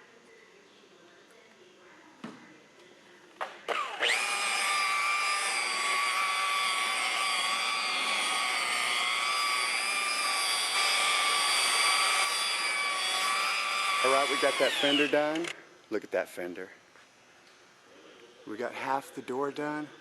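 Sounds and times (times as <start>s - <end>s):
power tool motor whining: 3.7s - 15.5s.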